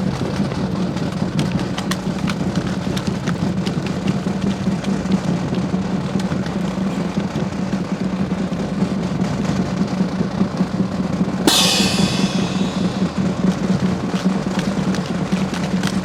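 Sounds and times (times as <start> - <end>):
cymbal crash: 11.5 - 13.8
marching snare and bass drum: 11.5 - 13.8.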